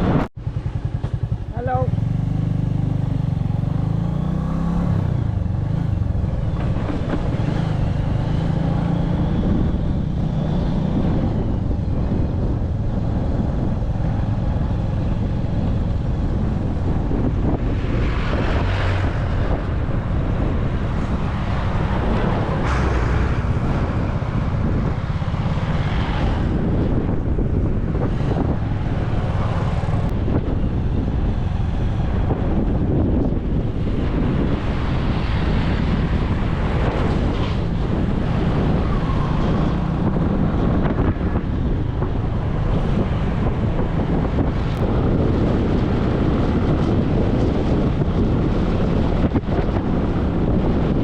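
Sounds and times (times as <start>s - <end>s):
motorbike engine running: 0.0s - 4.3s
wind rushing over microphone: 0.0s - 51.0s.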